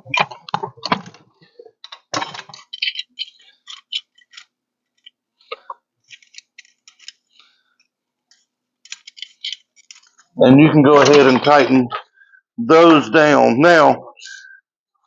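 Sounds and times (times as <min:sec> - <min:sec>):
metal nuts clicking on bolts: 0:01.9 - 0:05.2, 0:08.8 - 0:10.3.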